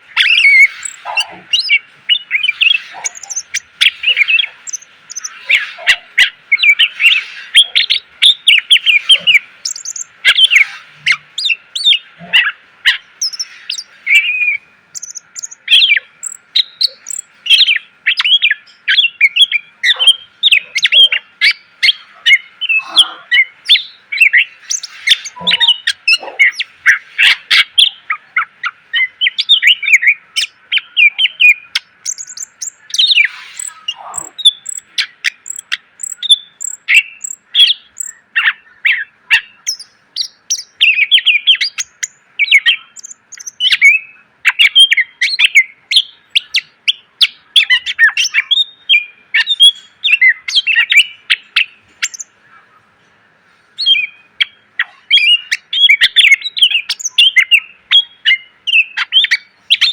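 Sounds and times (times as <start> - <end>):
songbird chirping and whistling: 0.1 - 52.6, 53.5 - 59.9.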